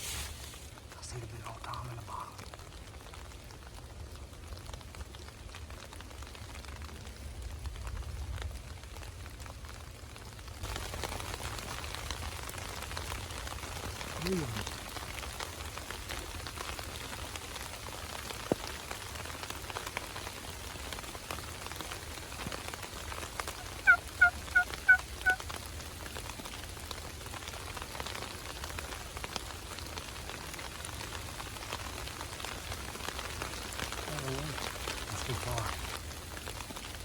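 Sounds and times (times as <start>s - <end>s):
steady rain falling: 0.0s - 37.0s
turkey yelps: 23.5s - 25.4s.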